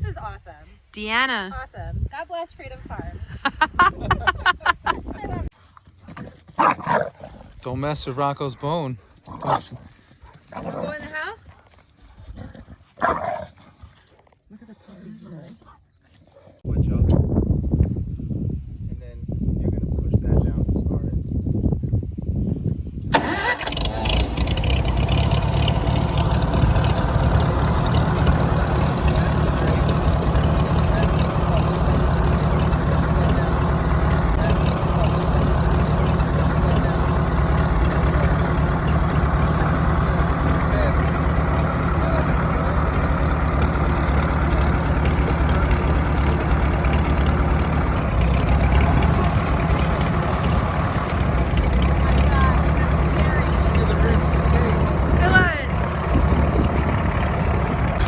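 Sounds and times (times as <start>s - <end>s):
tractor engine starting and running: 7.5s - 8.9s, 23.1s - 58.0s.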